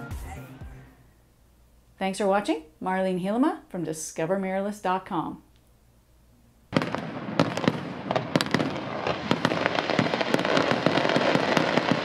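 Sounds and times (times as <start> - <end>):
fireworks crackling and banging: 6.7 - 12.0.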